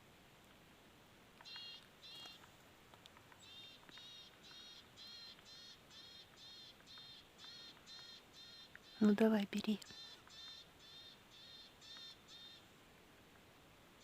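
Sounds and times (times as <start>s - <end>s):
bird calling: 1.4s - 2.5s, 3.4s - 9.2s, 9.8s - 12.7s.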